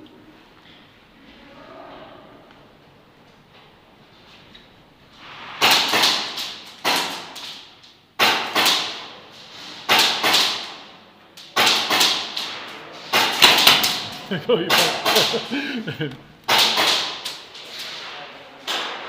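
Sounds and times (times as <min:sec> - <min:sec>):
airsoft gunfire cracks: 0:13.1 - 0:14.0, 0:16.5 - 0:17.3.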